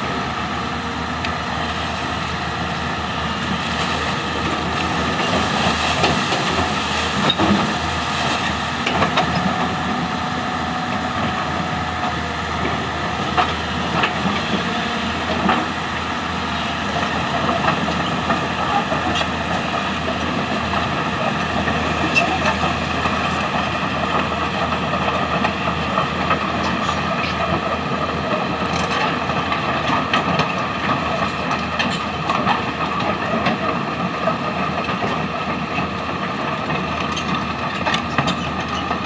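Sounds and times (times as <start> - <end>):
excavator engines under load: 0.0 - 39.0.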